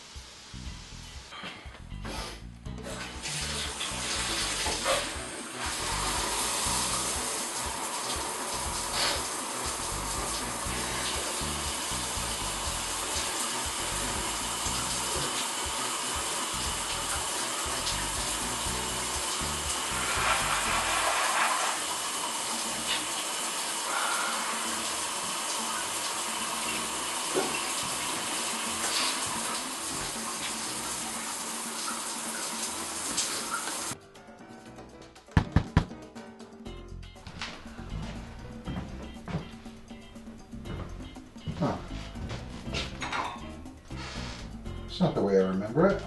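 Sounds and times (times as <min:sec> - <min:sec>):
water running from a tap: 0:02.7 - 0:34.0
sharp knocks: 0:35.4 - 0:36.0.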